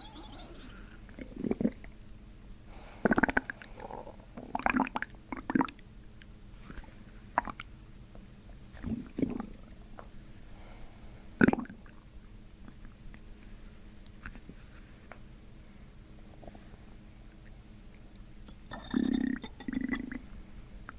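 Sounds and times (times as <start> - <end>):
stomach gurgling: 0.0 - 1.9, 3.1 - 5.8, 8.8 - 9.7, 18.5 - 20.3.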